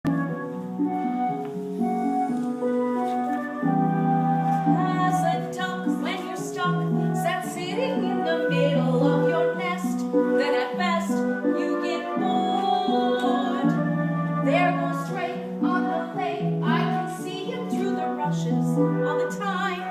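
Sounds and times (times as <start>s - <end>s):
melodic music with held notes: 0.0s - 19.9s.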